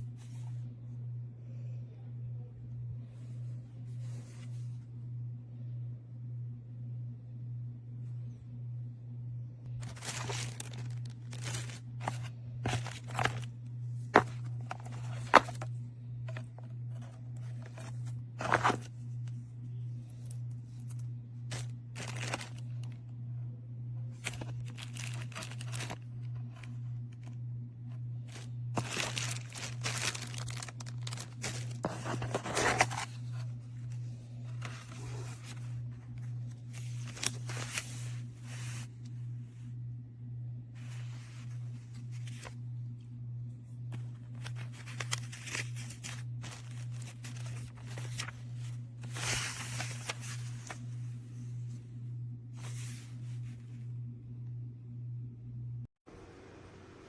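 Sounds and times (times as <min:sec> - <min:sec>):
steady low hum: 0:00.0 - 0:57.0
plastic crinkling and rustling: 0:09.8 - 0:15.7, 0:16.3 - 0:19.0, 0:20.2 - 0:23.0, 0:24.2 - 0:27.4, 0:28.2 - 0:38.9, 0:44.0 - 0:51.0.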